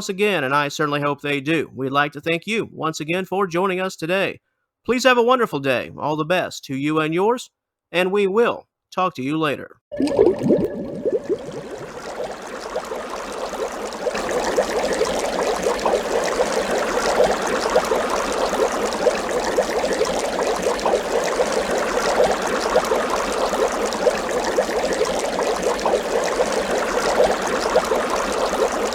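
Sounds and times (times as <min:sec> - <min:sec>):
water trickling and bubbling: 0:09.9 - 0:28.9.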